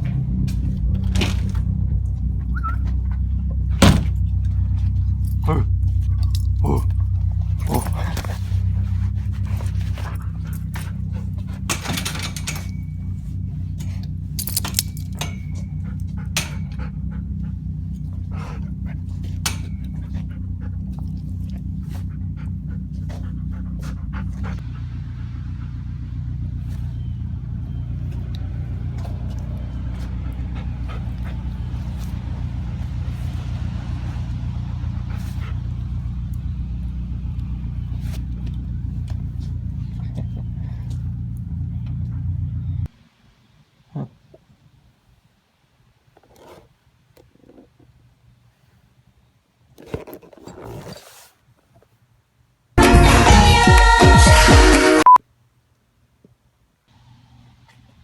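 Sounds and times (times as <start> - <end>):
car engine idling: 0.0 - 42.9.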